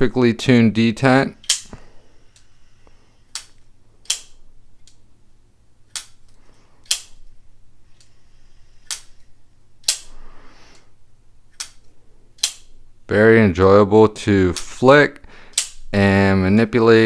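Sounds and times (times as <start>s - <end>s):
folding knife snapping clicks: 1.4s - 1.8s, 3.3s - 5.0s, 5.9s - 7.2s, 8.8s - 10.2s, 11.5s - 12.8s, 15.5s - 15.8s.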